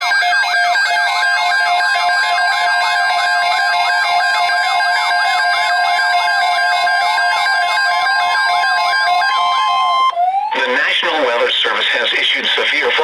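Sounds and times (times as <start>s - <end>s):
warbling electronic alarm: 0.0s - 13.0s.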